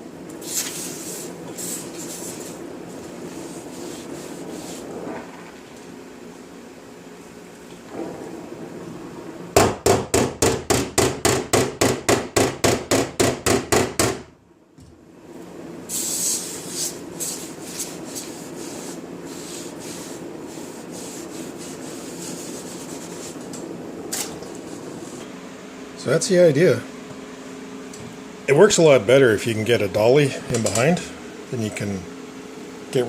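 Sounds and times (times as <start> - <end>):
rubbing on metal panel: 0.4 - 4.9, 16.0 - 23.5
hammer on sheet metal: 9.6 - 14.2.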